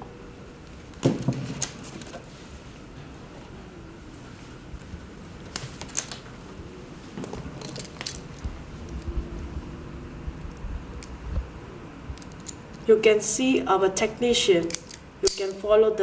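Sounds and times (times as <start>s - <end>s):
metallic clicks of hand tools: 14.6s - 15.6s.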